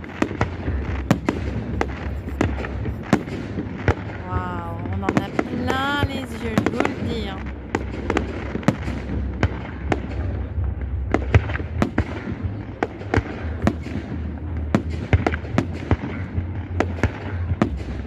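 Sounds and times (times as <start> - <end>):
fireworks bangs and cracks: 0.0 - 18.0
low rumble: 0.0 - 18.0.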